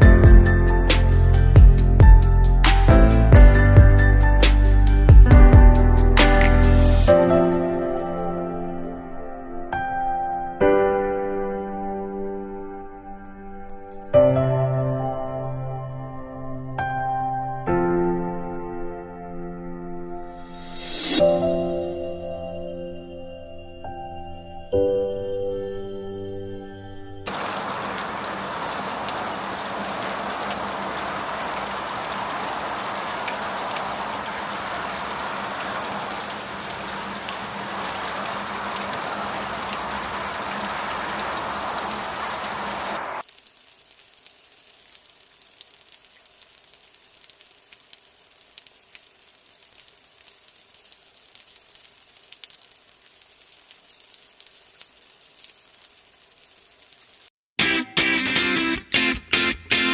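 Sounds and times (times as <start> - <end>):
heavy rain: 0.0 - 8.5, 27.3 - 57.3
light rain hiss: 0.0 - 10.5, 11.3 - 14.3, 20.2 - 21.6, 27.2 - 57.3
raindrop ticks: 27.3 - 57.2.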